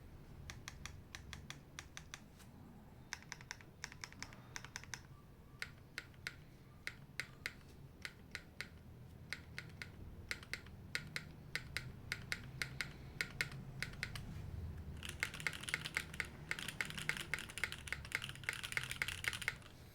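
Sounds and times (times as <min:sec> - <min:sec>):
mechanical keyboard typing: 0:03.1 - 0:19.8.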